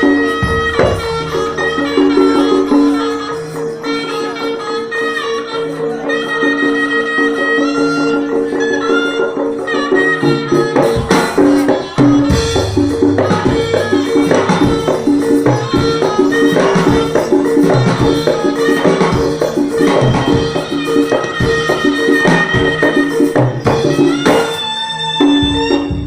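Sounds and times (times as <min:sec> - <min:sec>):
rapid drum strikes: 0:00.0 - 0:03.0, 0:09.7 - 0:24.6
shawm melody: 0:00.0 - 0:26.0.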